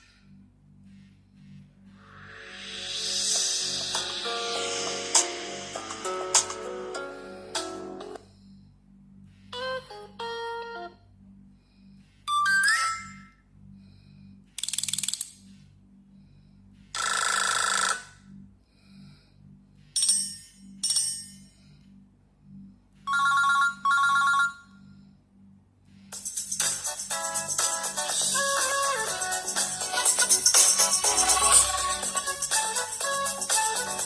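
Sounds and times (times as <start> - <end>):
ringtone tune: 12.3 - 13.3, 23.1 - 24.6, 27.9 - 34.0.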